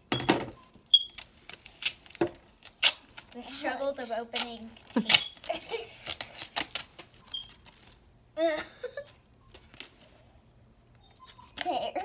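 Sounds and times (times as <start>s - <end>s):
tape peeling and tearing: 0.8s - 3.6s, 4.3s - 8.0s.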